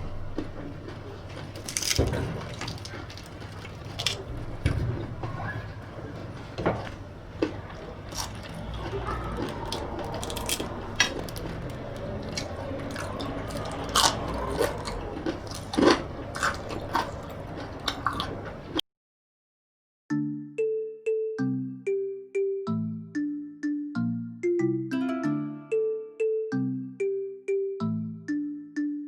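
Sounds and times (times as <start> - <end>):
low steady hum: 0.0 - 18.8.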